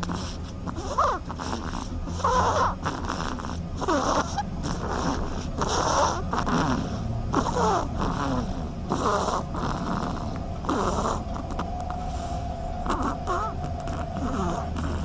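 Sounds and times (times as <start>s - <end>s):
duckling snoring: 0.0s - 15.0s.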